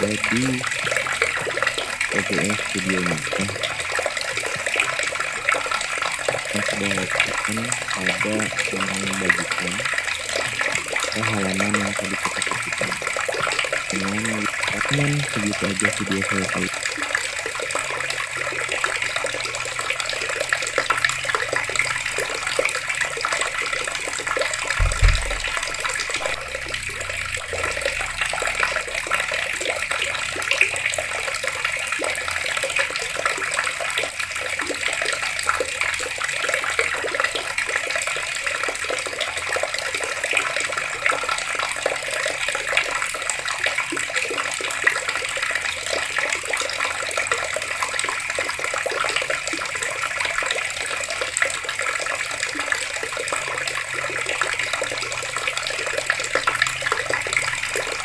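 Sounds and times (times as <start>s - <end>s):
water running from taps: 0.0s - 58.0s
low thump: 24.8s - 27.6s.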